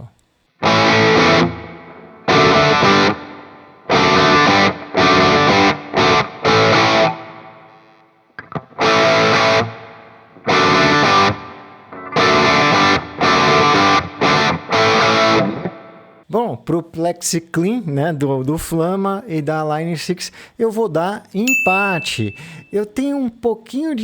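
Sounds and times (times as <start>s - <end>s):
overdriven electric guitar chords: 0.6s - 16.2s.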